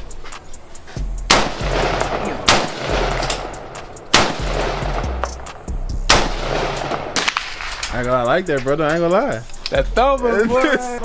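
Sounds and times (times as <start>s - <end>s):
rifle shots with ringing tail: 1.3s - 8.2s.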